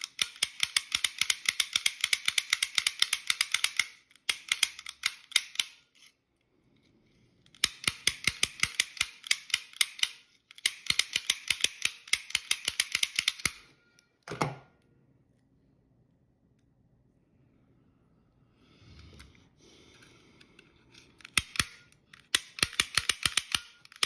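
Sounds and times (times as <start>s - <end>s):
lock snap gun clicking: 0.0s - 5.8s, 7.6s - 13.6s, 21.2s - 24.0s.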